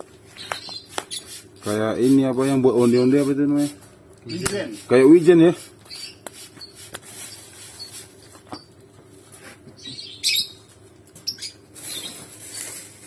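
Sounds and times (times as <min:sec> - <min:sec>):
lovebirds chirping and squeaking: 0:00.3 - 0:01.5, 0:02.2 - 0:04.6, 0:05.8 - 0:08.8, 0:09.7 - 0:13.0.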